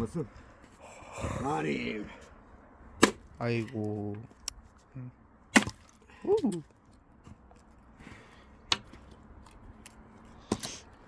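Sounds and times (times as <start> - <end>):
axe splitting log: 3.0 - 3.3, 5.5 - 6.0.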